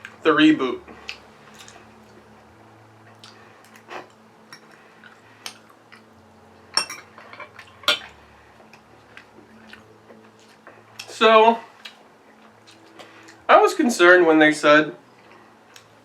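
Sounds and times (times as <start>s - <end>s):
cutlery clinking against a dish: 3.9s - 4.8s, 6.8s - 8.1s.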